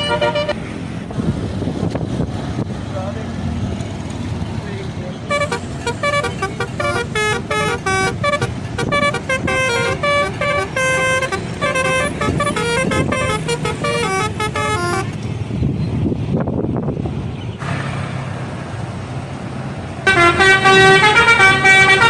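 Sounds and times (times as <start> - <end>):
bus horn playing short toots: 0.0 - 0.6, 5.3 - 15.1, 20.1 - 22.0
bus engine rumbling: 0.0 - 22.0.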